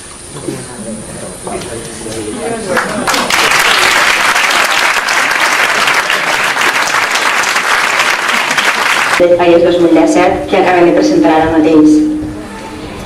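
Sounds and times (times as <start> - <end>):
audience applauding: 2.7 - 9.2.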